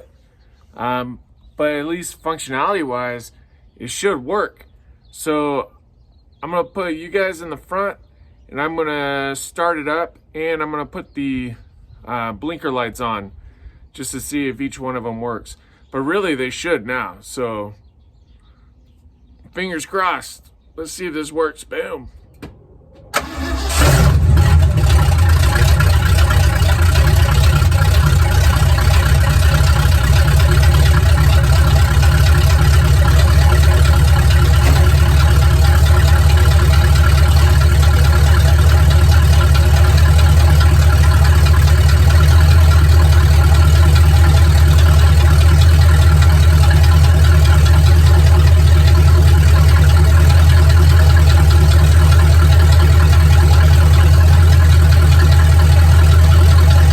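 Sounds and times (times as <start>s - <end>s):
truck engine cranking and idling: 23.0s - 56.9s.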